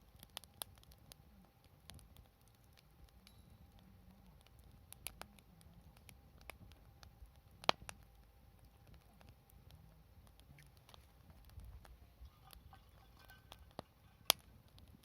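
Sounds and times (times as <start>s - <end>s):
wood fire crackling: 0.0s - 15.0s
sharp pops of fire: 4.4s - 15.0s.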